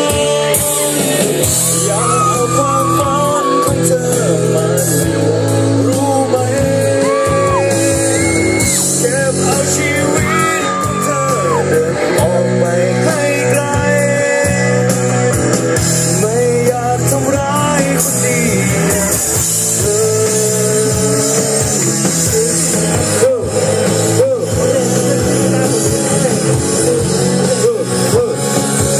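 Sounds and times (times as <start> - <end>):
live rock band: 0.0 - 28.9
person singing: 0.0 - 28.9.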